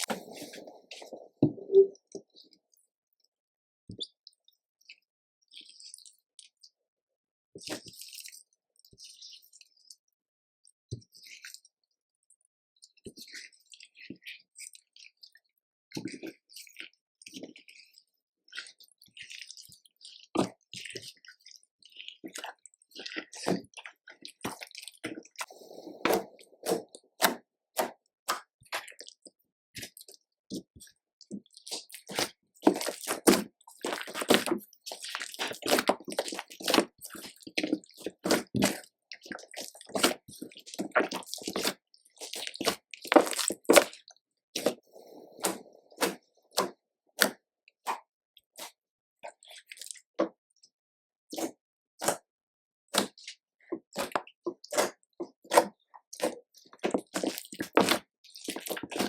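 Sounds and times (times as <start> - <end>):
slime squishing: 0.0 - 1.8, 22.0 - 48.0, 51.3 - 52.2, 52.9 - 59.0.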